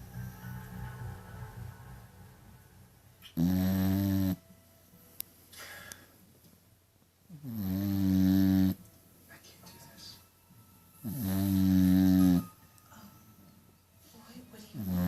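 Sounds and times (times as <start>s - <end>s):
person snoring: 11.1s - 12.4s.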